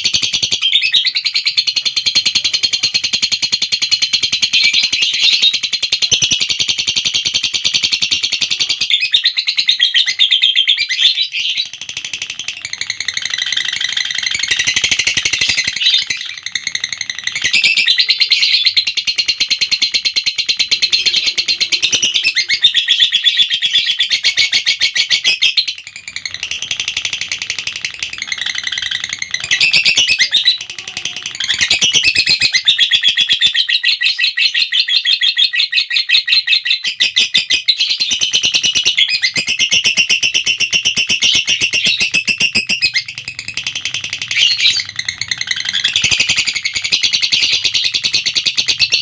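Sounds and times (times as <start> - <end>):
lovebird shrill trill: 12.5 - 49.0.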